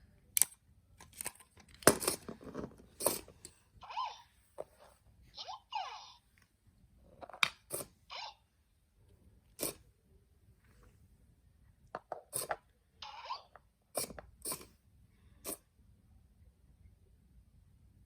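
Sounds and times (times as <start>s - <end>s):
sharp clicks and snaps: 0.4s - 1.4s.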